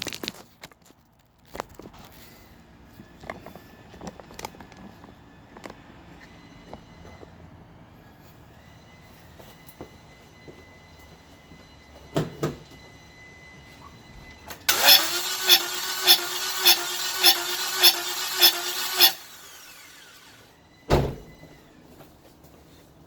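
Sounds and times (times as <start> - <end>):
car engine cranking: 14.7 - 20.4
thump: 20.9 - 21.3.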